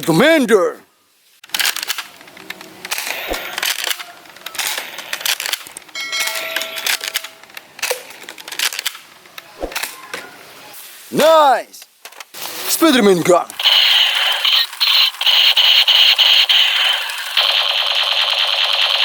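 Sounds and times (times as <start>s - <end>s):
plastic toy guns clattering: 1.5s - 9.0s.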